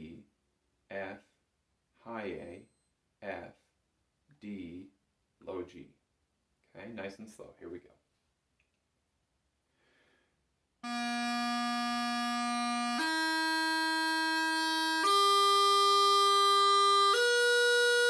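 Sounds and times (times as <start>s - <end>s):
practice chanter sustained notes: 10.8s - 18.0s.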